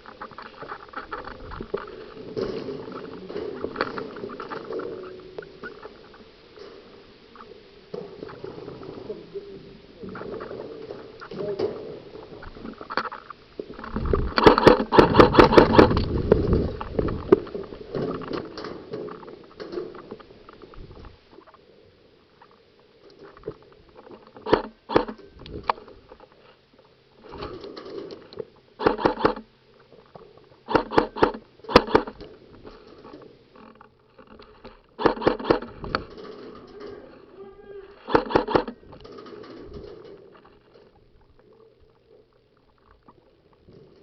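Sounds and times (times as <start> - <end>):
airsoft guns firing: 14.4 - 16.0, 28.8 - 29.4, 30.7 - 32.2, 35.0 - 35.7, 38.1 - 38.8.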